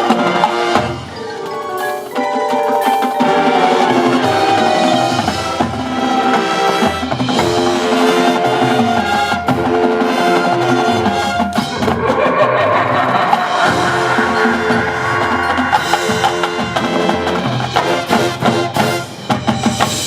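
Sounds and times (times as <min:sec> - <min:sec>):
marching band playing: 0:00.0 - 0:20.0.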